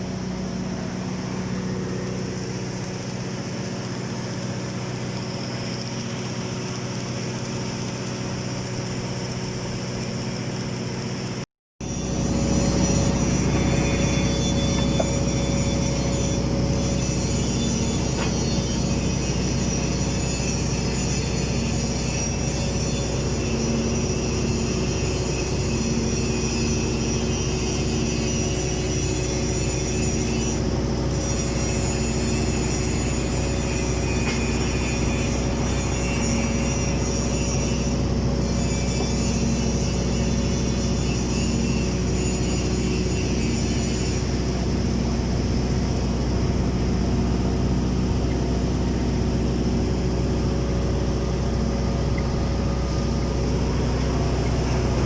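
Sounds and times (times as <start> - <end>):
welding machine humming and whining: 0.0 - 55.0.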